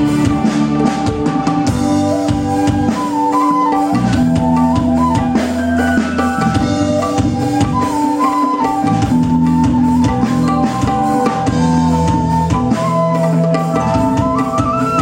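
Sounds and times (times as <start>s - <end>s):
drum kit beating: 0.0s - 15.0s
stepping melody line: 0.0s - 15.0s
held bass notes: 8.8s - 12.8s.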